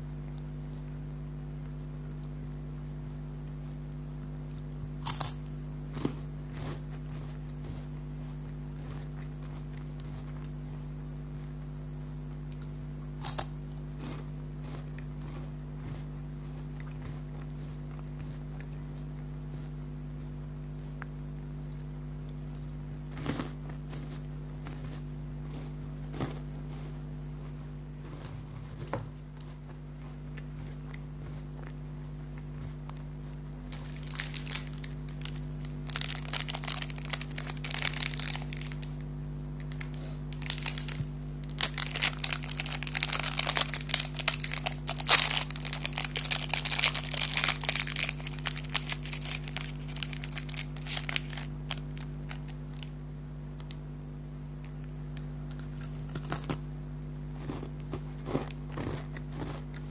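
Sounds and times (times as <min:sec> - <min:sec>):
snack wrapper crinkling and tearing: 0:05.0 - 0:05.4, 0:12.6 - 0:13.5, 0:32.9 - 0:52.9, 0:55.0 - 0:56.6, 0:57.4 - 0:59.9.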